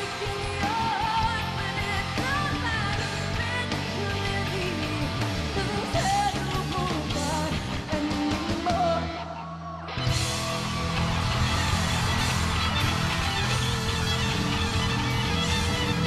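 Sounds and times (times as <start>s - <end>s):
woman singing: 0.0s - 9.6s
bass guitar: 0.0s - 16.0s
drums: 0.0s - 16.0s
electric guitar: 0.0s - 16.0s.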